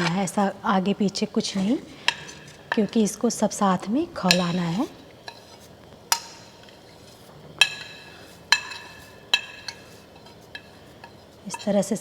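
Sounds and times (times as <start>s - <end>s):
dishes clinking against pot: 1.6s - 3.2s, 4.2s - 12.0s.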